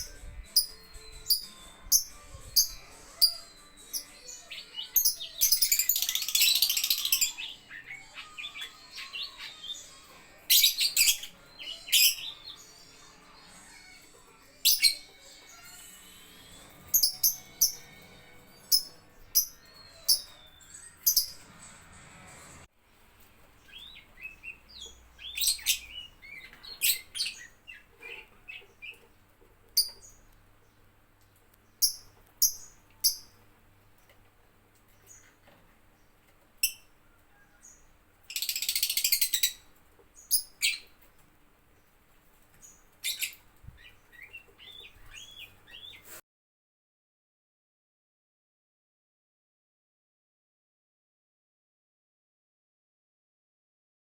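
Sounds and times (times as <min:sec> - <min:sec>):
lovebirds chirping: 0:00.0 - 0:13.2, 0:14.5 - 0:21.5, 0:22.9 - 0:41.3, 0:42.4 - 0:46.2.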